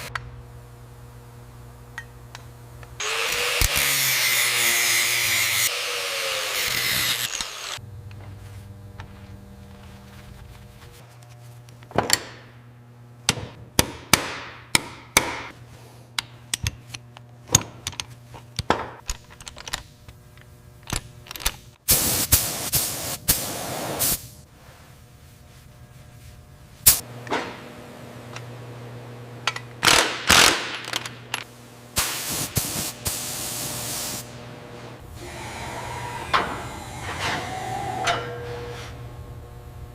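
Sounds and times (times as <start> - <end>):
power tool running: 3.0 - 7.8, 35.0 - 38.7.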